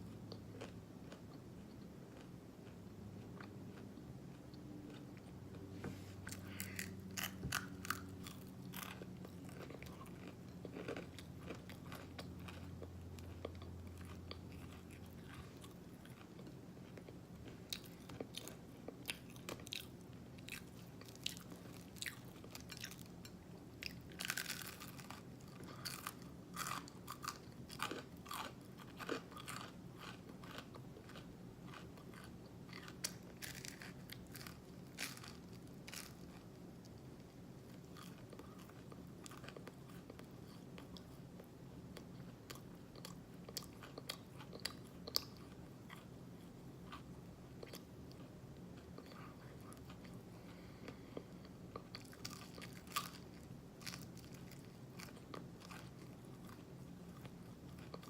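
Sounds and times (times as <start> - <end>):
open-mouthed chewing: 6.2 - 36.4.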